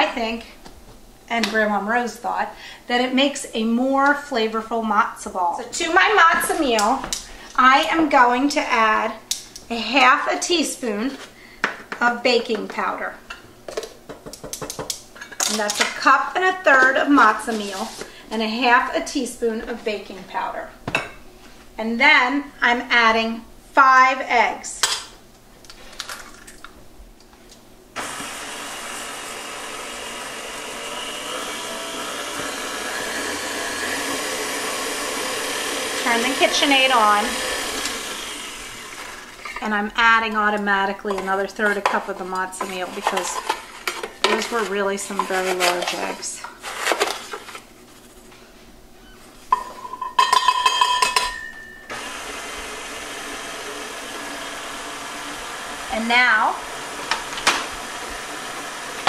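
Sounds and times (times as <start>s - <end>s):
stand mixer motor running: 28.0s - 39.6s, 51.9s - 56.0s, 56.6s - 59.0s
metallic clinking and ringing: 49.6s - 51.9s.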